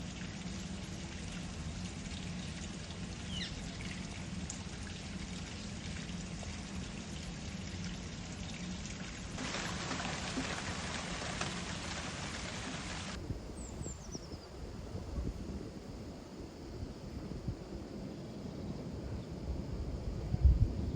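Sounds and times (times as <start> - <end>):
water trickling and pouring: 0.0 - 13.2.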